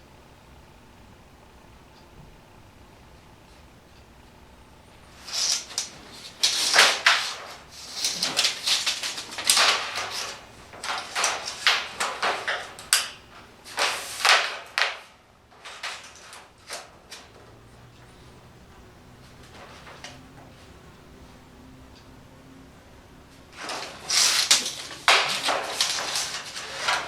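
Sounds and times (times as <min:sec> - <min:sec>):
marking tool scraping sheet metal: 0:05.2 - 0:15.0, 0:23.6 - 0:27.0.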